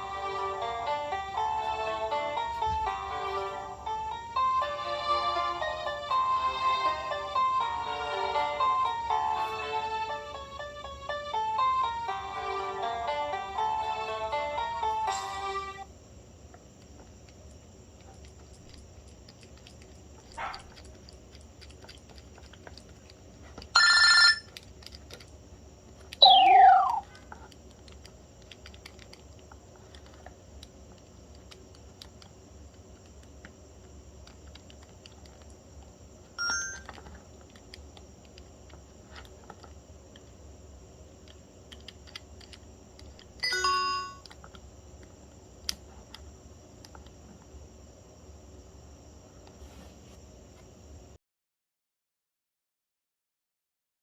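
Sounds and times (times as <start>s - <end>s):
phone alert tones: 23.8s - 24.5s, 26.2s - 27.0s, 36.4s - 36.9s, 43.4s - 44.3s.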